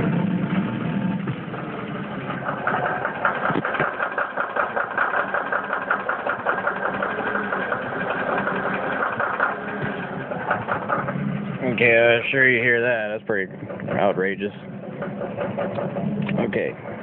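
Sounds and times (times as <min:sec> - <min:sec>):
car engine idling: 0:00.0 - 0:17.0
rapid metallic knock: 0:02.3 - 0:11.3, 0:13.5 - 0:17.0.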